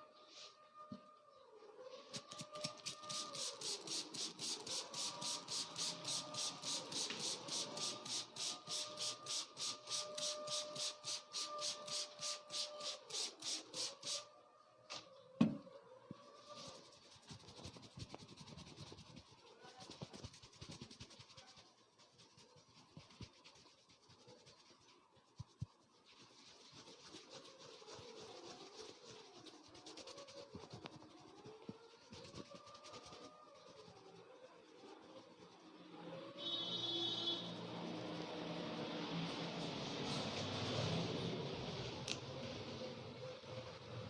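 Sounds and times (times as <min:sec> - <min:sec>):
hands rubbing hair and skin: 0:02.0 - 0:14.2, 0:16.4 - 0:34.3.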